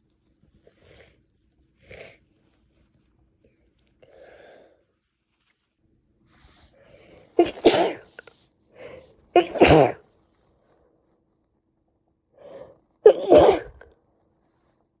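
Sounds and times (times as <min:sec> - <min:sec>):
woman sneezing: 0:07.4 - 0:08.2, 0:09.4 - 0:10.0, 0:13.1 - 0:13.8
quick in-breath: 0:12.4 - 0:12.8.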